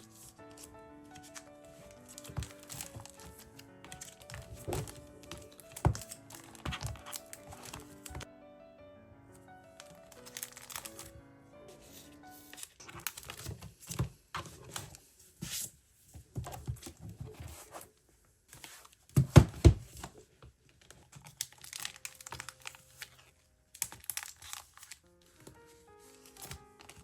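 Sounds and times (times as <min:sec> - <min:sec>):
plastic sleeves crinkling: 0:00.0 - 0:08.3, 0:09.6 - 0:15.1, 0:18.5 - 0:27.0.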